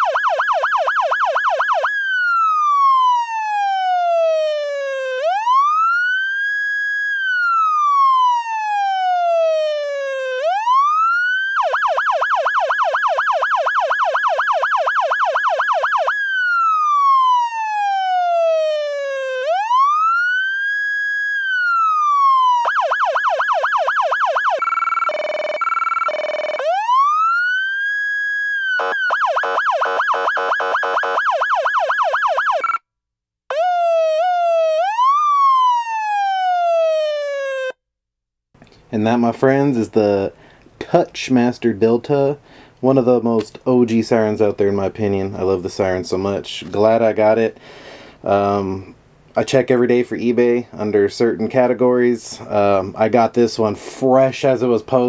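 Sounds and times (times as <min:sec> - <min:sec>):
electronic siren yelp and wail: 0:00.0 - 0:32.8, 0:33.5 - 0:37.8.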